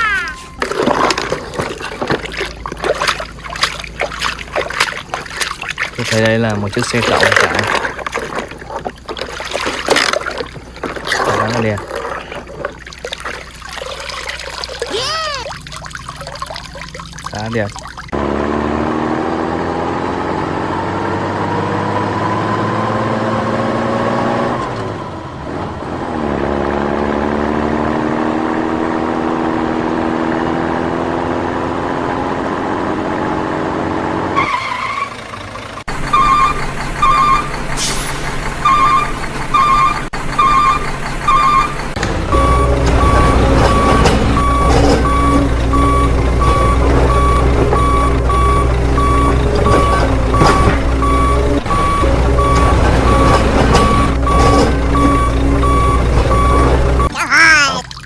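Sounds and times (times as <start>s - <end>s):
low engine rumble: 0.0s - 18.8s
truck engine whine: 0.0s - 57.1s
truck reversing beeper: 34.2s - 57.1s.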